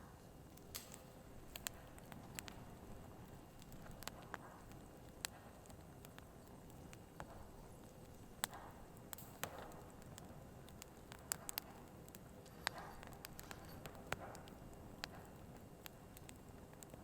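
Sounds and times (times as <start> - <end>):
firewood crackling and popping: 0.0 - 17.0
hiss of flames: 0.1 - 17.0.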